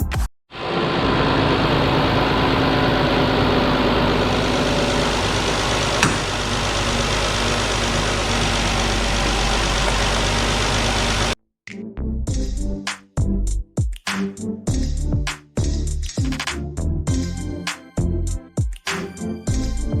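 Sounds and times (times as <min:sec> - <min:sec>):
car engine idling: 0:00.7 - 0:11.4
sharp click: 0:06.0 - 0:06.4.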